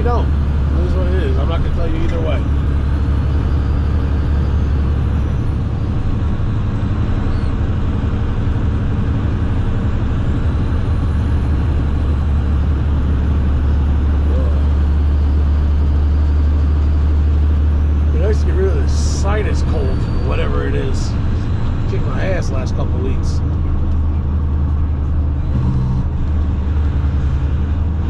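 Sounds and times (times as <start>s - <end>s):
road noise: 0.0s - 28.0s
truck engine drone: 0.0s - 28.0s.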